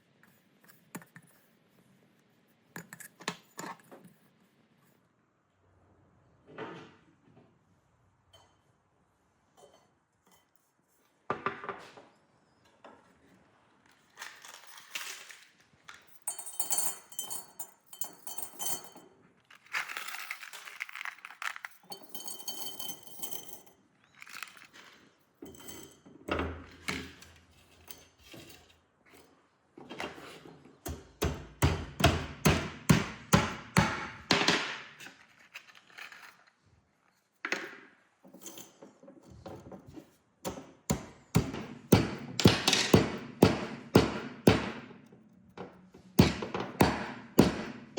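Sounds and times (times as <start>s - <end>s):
steel parts clinking and scraping: 14.2s - 26.2s, 38.2s - 39.1s.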